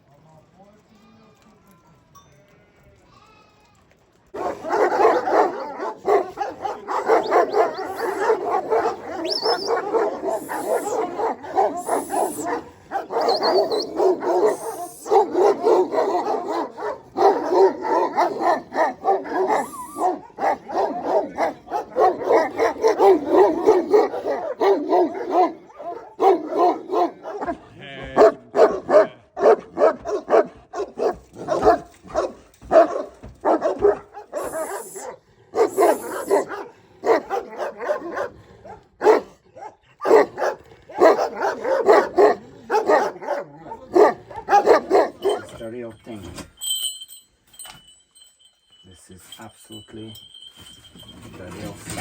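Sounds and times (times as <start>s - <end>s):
dogs barking together: 4.3s - 45.7s.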